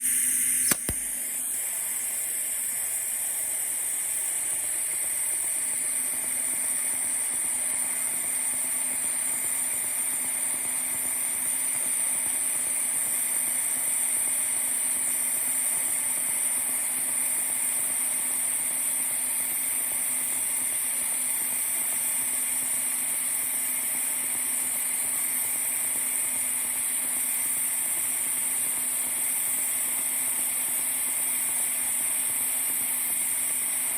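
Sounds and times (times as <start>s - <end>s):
welding arc buzzing hiss: 0.0s - 33.9s
sharp click: 0.6s - 1.3s.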